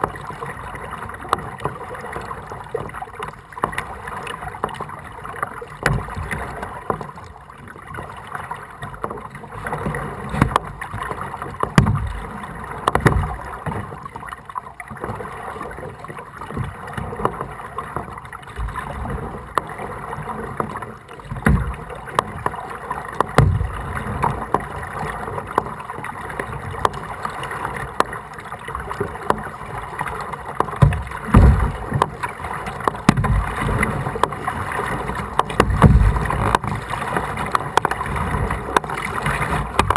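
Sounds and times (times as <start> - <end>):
paddle splashing water: 0.0 - 39.9
low thumps: 30.8 - 32.0, 33.1 - 33.6, 35.6 - 36.7.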